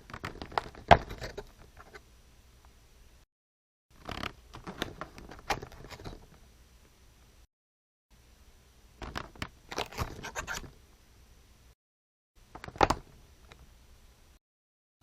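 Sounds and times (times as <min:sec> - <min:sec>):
card crackling and scraping: 0:09.1 - 0:10.7.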